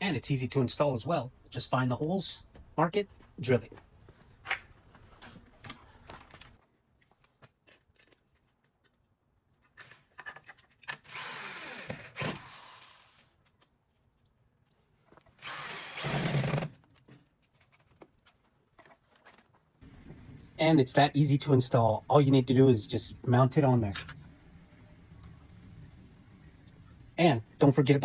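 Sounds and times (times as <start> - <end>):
power drill running: 11.1 - 13.1, 15.4 - 16.7.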